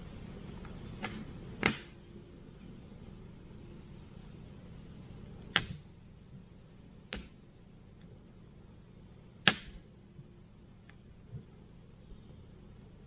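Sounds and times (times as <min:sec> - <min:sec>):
firewood popping snaps: 0:05.5 - 0:05.8, 0:07.1 - 0:07.4, 0:09.4 - 0:09.8.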